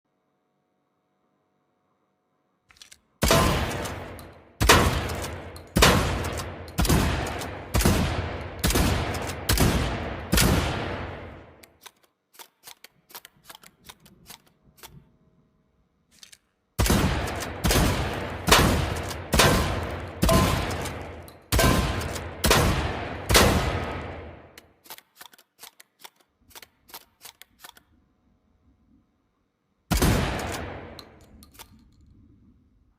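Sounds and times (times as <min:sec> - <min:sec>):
shotgun shots echoing: 0:03.2 - 0:11.6, 0:16.8 - 0:24.6, 0:29.9 - 0:31.3.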